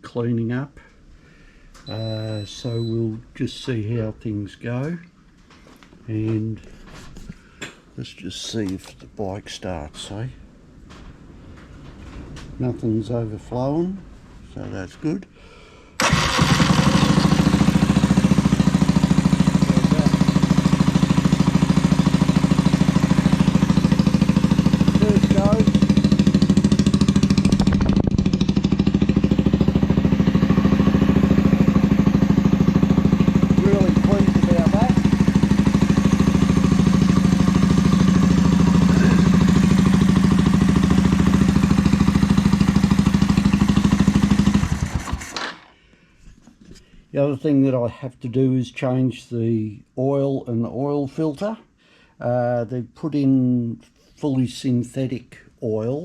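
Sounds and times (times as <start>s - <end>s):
motorcycle engine idling: 16.0s - 45.0s.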